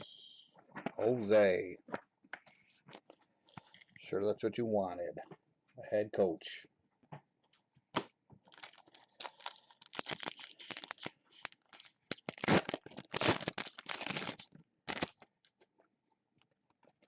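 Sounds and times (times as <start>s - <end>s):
wrapper tearing and crinkling: 8.5s - 15.4s.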